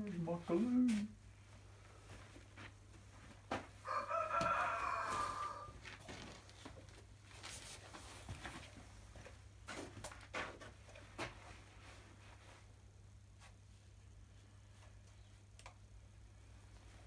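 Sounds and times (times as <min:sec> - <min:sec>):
rooster crowing: 0:03.8 - 0:05.8.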